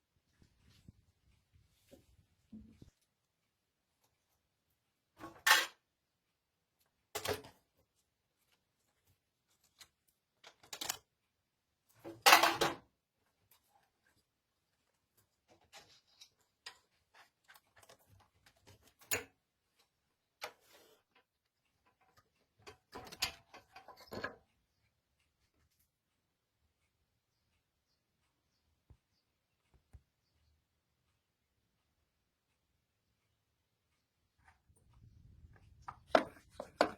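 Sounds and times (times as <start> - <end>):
tools and parts knocking and rattling: 5.1 - 5.9, 7.1 - 8.0, 9.6 - 11.2, 11.9 - 14.2, 14.8 - 20.6, 21.2 - 24.8, 34.4 - 36.9.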